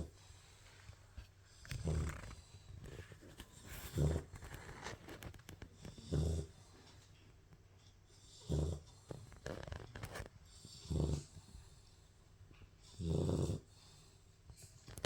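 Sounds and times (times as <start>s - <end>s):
puppy snoring: 1.5s - 5.0s, 5.8s - 6.8s, 8.1s - 11.9s, 12.8s - 14.2s.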